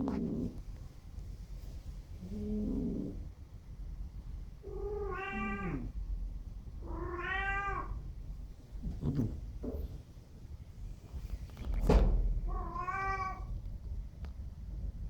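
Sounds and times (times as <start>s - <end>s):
pet snoring: 2.3s - 3.2s, 8.8s - 10.0s.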